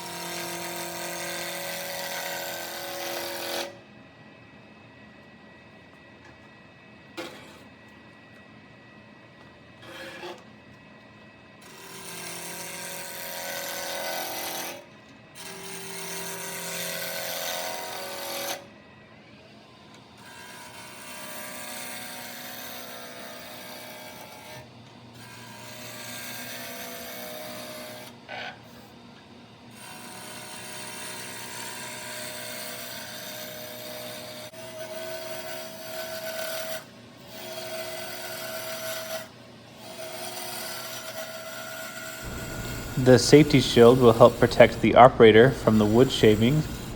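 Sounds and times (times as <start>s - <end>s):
turning tool scraping wood: 9.8s - 10.4s, 42.2s - 46.9s
wood lathe running: 40.9s - 46.9s.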